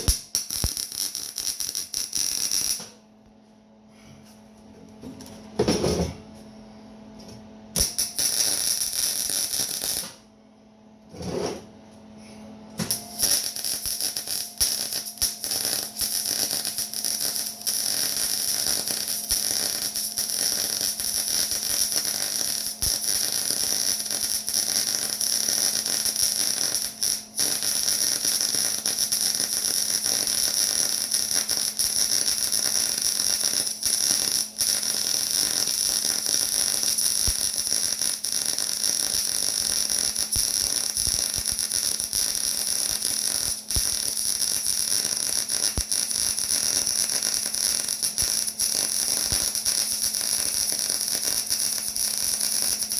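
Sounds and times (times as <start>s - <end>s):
welding arc crackling: 0.0s - 2.9s, 7.8s - 10.2s, 12.8s - 52.9s.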